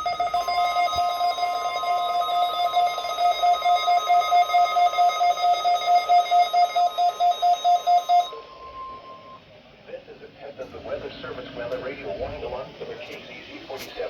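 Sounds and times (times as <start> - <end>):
repeating electronic beeps: 0.0 - 9.4
steady alarm tone: 0.0 - 9.6.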